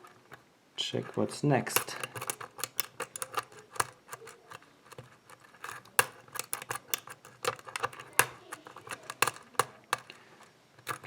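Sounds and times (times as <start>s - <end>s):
lock pick clicking in lock: 1.7s - 10.2s, 10.8s - 11.0s.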